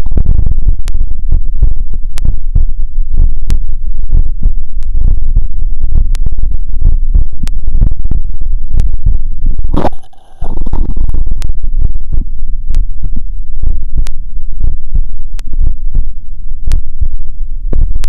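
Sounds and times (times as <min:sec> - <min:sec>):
heartbeat thuds: 0:00.1 - 0:11.0.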